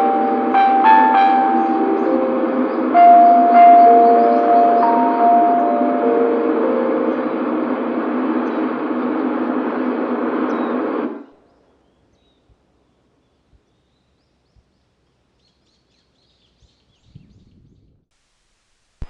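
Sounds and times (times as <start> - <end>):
loudspeaker chime: 0.0 - 7.9.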